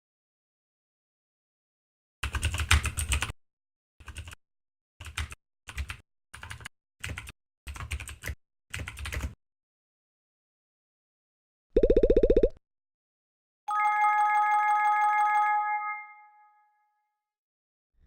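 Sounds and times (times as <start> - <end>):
computer keyboard typing: 2.2 - 3.3, 4.0 - 4.4, 5.0 - 9.4, 11.8 - 12.6.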